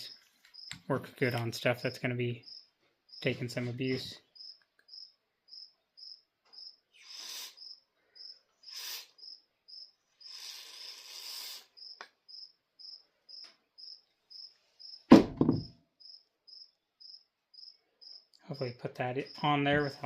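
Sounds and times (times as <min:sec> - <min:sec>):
cricket chirping: 0:00.0 - 0:20.0
loud thump: 0:15.1 - 0:15.7.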